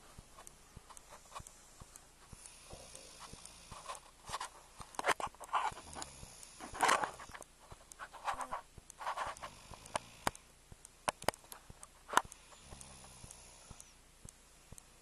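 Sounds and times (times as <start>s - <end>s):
snoring: 2.4s - 3.8s, 5.7s - 7.3s, 9.5s - 10.4s, 12.4s - 14.0s.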